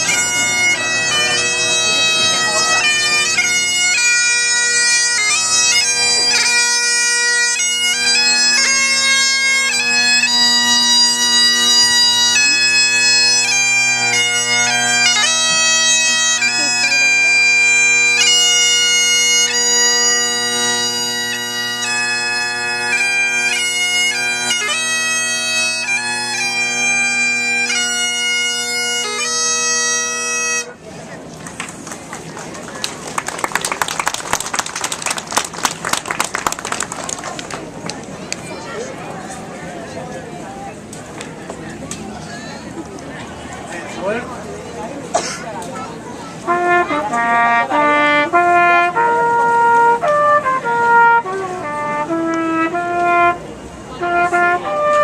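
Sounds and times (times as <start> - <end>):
bagpipes playing a tune: 0.0 - 30.8, 45.9 - 55.0.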